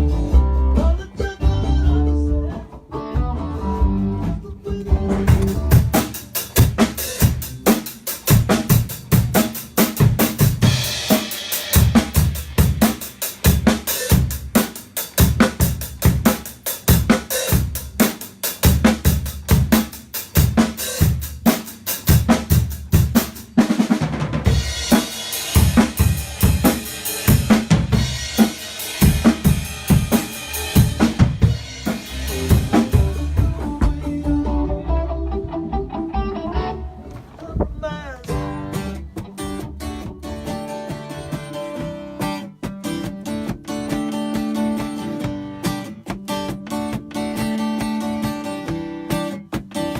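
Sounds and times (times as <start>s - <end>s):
kick drum: 33.0s - 34.4s.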